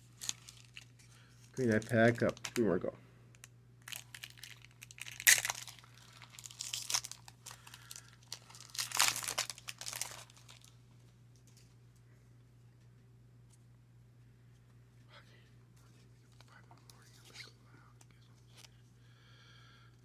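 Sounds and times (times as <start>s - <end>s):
card pack wrapper crinkling: 0.0s - 2.8s, 3.4s - 10.7s.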